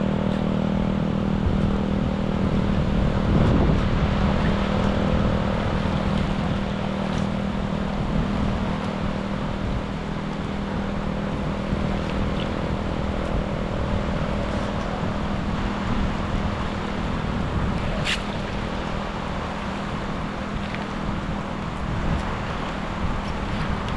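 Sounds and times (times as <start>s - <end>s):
low steady hum: 0.0s - 23.9s
rushing water: 0.0s - 23.9s
sharp click: 18.0s - 18.6s.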